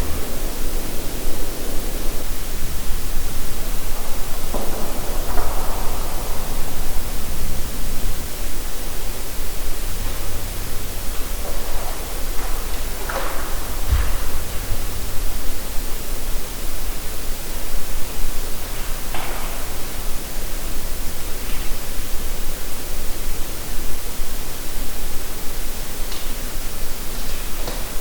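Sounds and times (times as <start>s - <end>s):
loud steady hiss: 0.0s - 28.0s
low thump: 10.0s - 16.3s.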